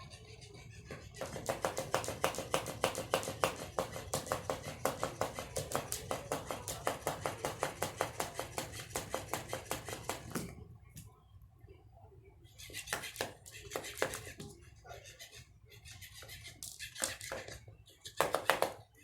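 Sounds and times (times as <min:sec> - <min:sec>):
fish toy clicking rapidly: 0:01.1 - 0:10.3.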